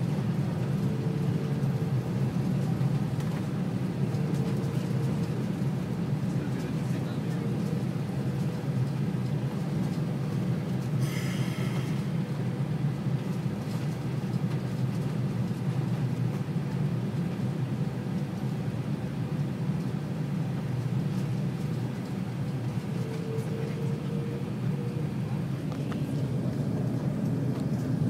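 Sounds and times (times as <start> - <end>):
airliner cabin engine rumble: 0.0 - 28.0.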